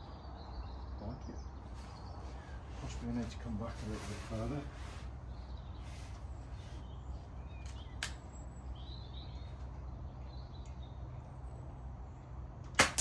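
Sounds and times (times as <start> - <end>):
faint bird chirps: 5.2 - 11.5
air rifle shot: 12.8 - 13.0.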